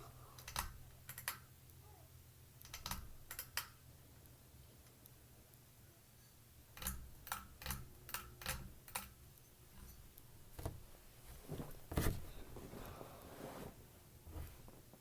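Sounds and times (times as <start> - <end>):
sharp clicks: 2.6 - 4.4.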